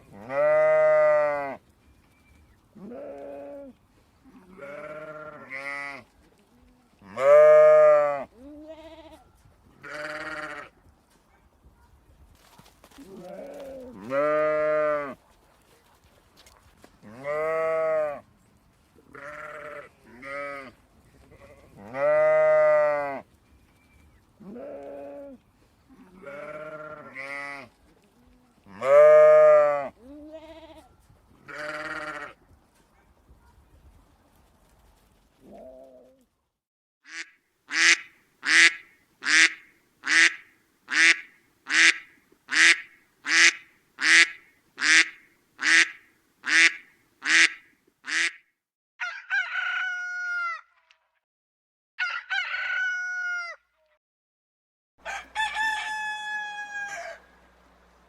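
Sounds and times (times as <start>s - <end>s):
goats and sheep bleating: 0.0s - 1.6s, 2.8s - 6.1s, 7.0s - 9.2s, 9.8s - 10.7s, 13.0s - 15.2s, 17.0s - 18.2s, 19.1s - 23.3s, 24.4s - 27.7s, 28.7s - 32.4s
duck quacks: 37.1s - 48.4s.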